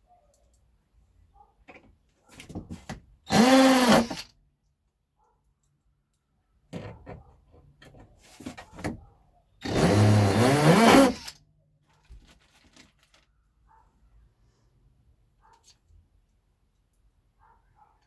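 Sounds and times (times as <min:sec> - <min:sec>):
power drill driving screw into wood: 0:03.3 - 0:04.3, 0:09.6 - 0:11.4.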